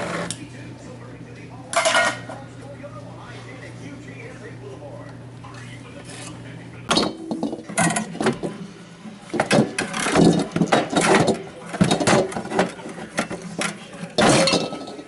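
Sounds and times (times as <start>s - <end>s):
hard objects clattering: 6.9s - 8.6s, 9.3s - 15.0s.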